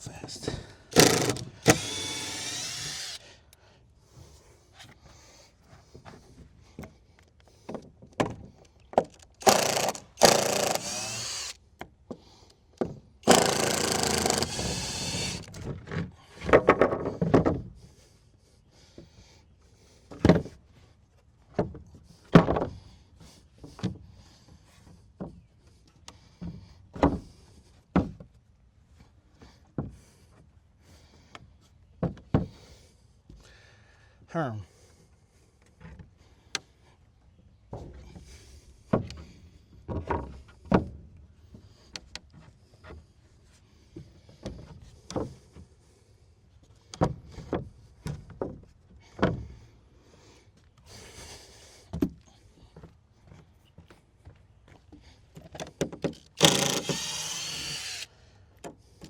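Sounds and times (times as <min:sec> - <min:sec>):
power drill running: 0:00.9 - 0:03.3, 0:09.4 - 0:11.6, 0:13.2 - 0:15.6, 0:56.2 - 0:58.2.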